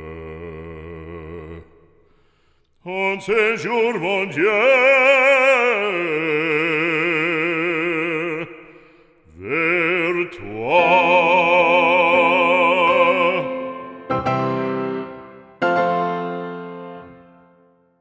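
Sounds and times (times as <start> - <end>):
operatic singing with vibrato: 2.8 - 17.2.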